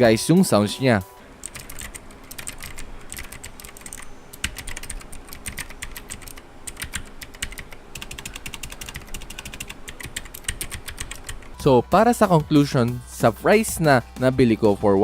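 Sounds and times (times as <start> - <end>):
mechanical keyboard key clicks: 1.4 - 11.5.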